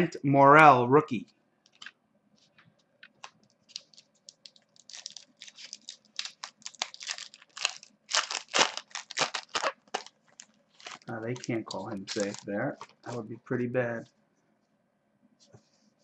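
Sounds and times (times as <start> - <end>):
card wrapper crinkling: 1.7 - 2.0, 3.0 - 13.2.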